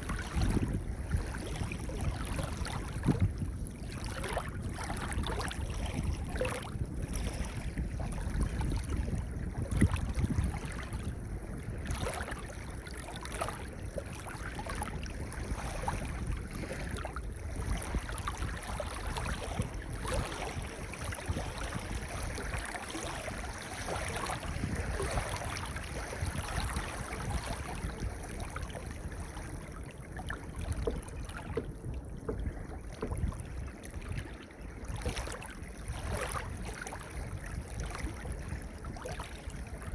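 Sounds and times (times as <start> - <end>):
waves washing over pebbles: 15.4 - 29.4.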